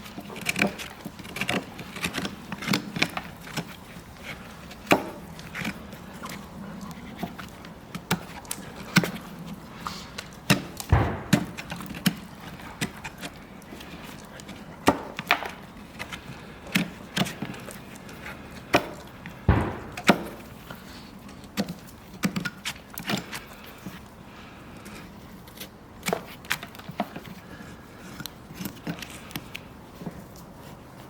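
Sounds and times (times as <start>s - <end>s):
farrier tools cracking on hoof: 0.0s - 24.1s
heavy thud: 10.9s - 11.8s, 19.5s - 20.7s.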